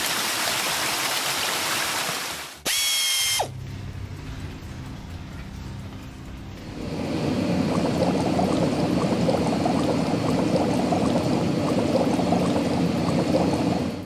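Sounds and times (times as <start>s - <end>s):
bubbling pouring water: 6.0s - 14.0s.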